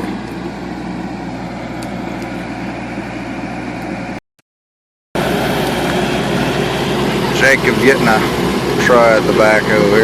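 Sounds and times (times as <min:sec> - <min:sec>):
backhoe engine running: 0:00.0 - 0:04.2, 0:05.2 - 0:10.0.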